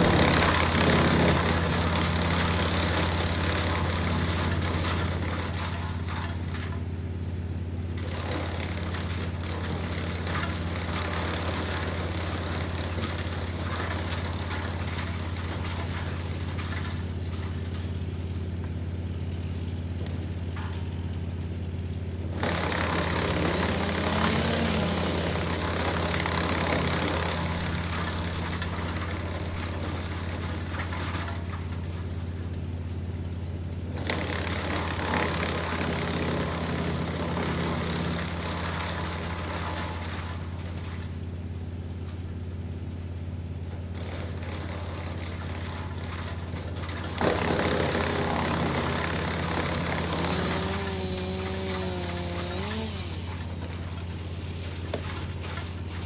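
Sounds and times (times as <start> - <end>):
wood being chipped: 0.0 - 6.6, 22.3 - 31.3, 33.9 - 40.2, 44.0 - 56.0
wood chipper engine running: 0.0 - 56.0.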